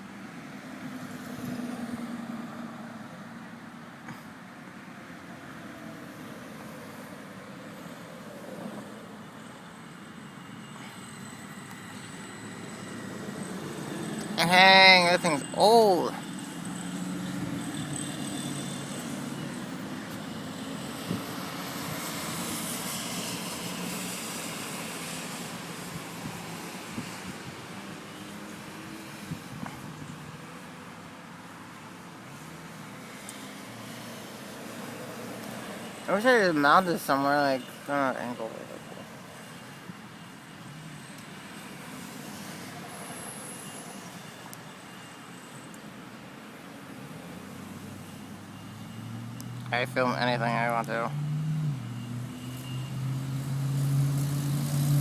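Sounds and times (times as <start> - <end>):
vehicle passing: 47.0 - 55.0.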